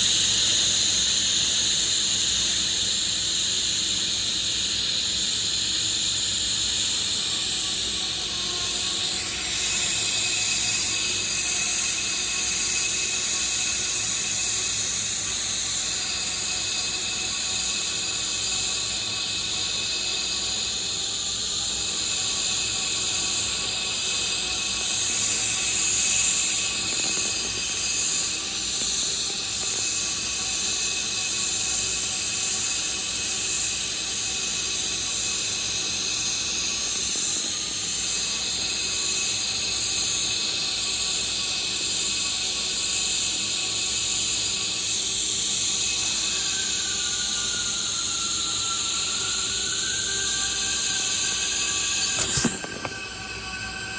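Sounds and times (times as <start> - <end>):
welding arc hissing: 22.1 - 31.2.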